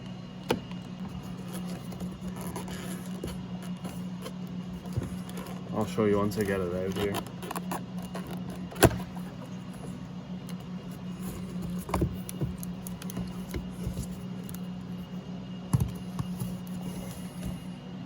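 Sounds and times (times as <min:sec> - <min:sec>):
steady low hum: 0:00.0 - 0:18.0
plastic clicks and scrapes: 0:01.5 - 0:09.2.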